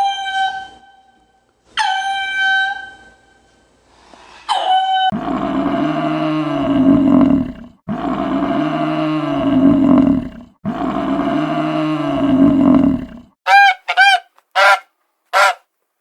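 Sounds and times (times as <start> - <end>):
long low animal call: 5.1 - 13.4
high-pitched animal calls: 15.4 - 15.6.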